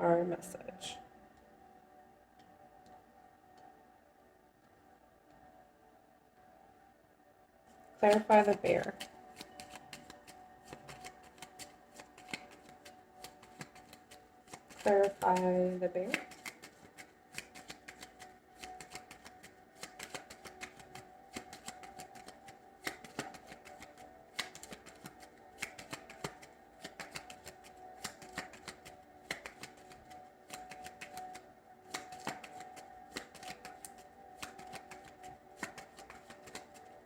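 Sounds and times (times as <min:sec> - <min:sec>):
cards being shuffled: 0:07.8 - 0:37.0.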